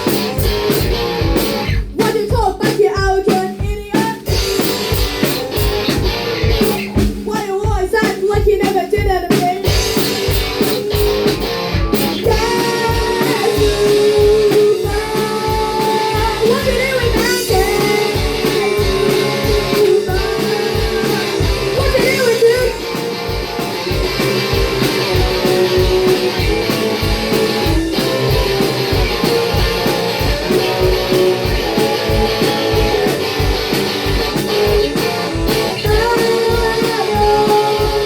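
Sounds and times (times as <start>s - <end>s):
drum kit: 0.0s - 38.0s
guitar: 0.0s - 38.0s
person singing: 2.0s - 4.6s, 12.2s - 23.2s, 25.3s - 32.0s, 34.8s - 38.0s.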